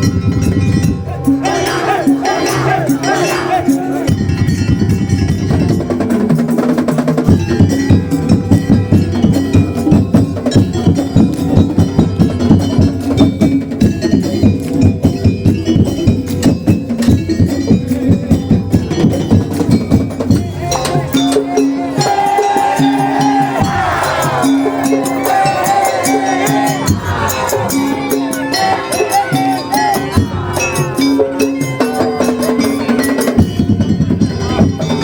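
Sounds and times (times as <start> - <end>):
clacking wood-block strikes: 0.0 - 26.7
drums: 0.0 - 35.0.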